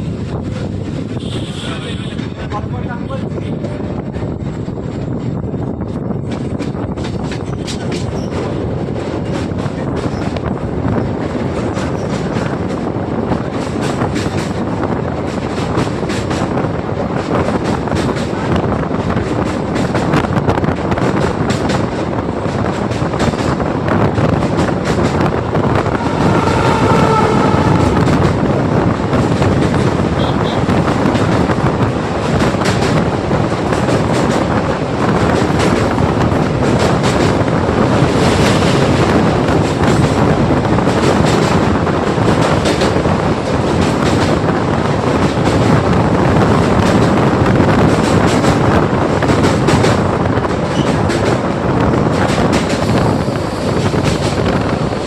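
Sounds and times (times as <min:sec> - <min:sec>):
clickety-clack of wheels: 0:00.0 - 0:28.4, 0:29.0 - 0:55.0
train wheels rumbling on rails: 0:00.0 - 0:55.0
brief high tone: 0:25.8 - 0:28.8.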